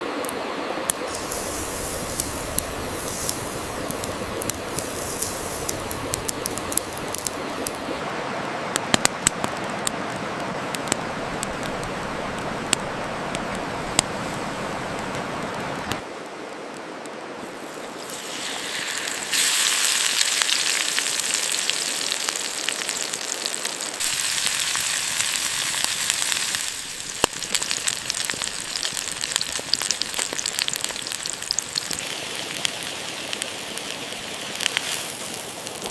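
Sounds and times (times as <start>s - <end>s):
campfire crackling and popping: 0.2s - 35.9s
bright hiss: 1.0s - 8.0s, 24.0s - 32.4s
fish sizzling on a hot stone: 1.0s - 8.0s, 17.4s - 35.9s.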